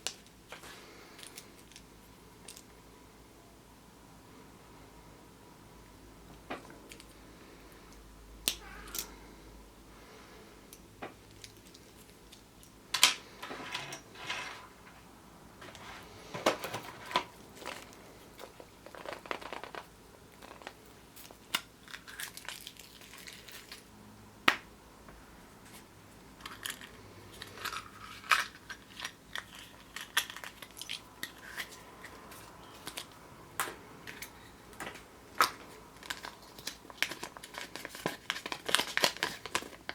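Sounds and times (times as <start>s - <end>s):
foil wrappers crinkling: 16.5s - 23.9s, 26.4s - 33.1s, 35.4s - 39.9s.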